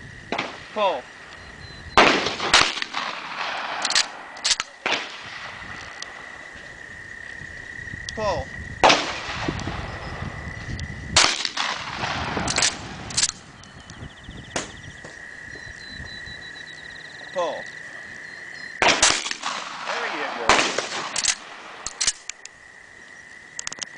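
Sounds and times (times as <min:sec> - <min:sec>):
shotgun shots with ringing tail: 0:02.0 - 0:06.0, 0:08.8 - 0:10.0, 0:11.2 - 0:13.5, 0:14.5 - 0:14.9, 0:18.8 - 0:22.2
short sharp cracks: 0:02.0 - 0:06.2, 0:11.2 - 0:13.4, 0:18.8 - 0:22.6.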